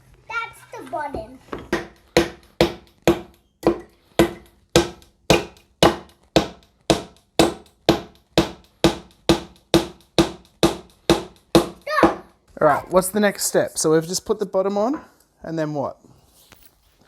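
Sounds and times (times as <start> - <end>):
hammer driving nail into wood: 1.7 - 12.3.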